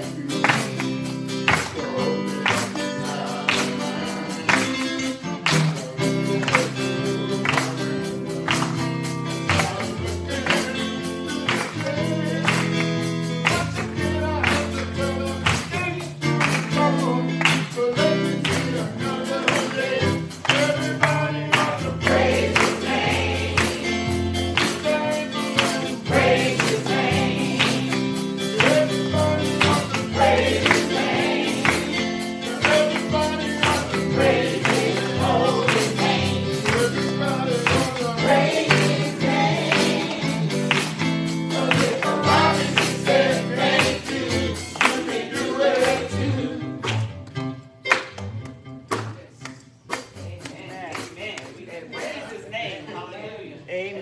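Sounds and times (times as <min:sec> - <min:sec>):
percussion hits: 0:00.0 - 0:52.3
band playing gospel music: 0:00.0 - 0:53.1
choir singing: 0:01.8 - 0:04.9, 0:18.6 - 0:24.4, 0:25.2 - 0:40.8, 0:41.4 - 0:46.8.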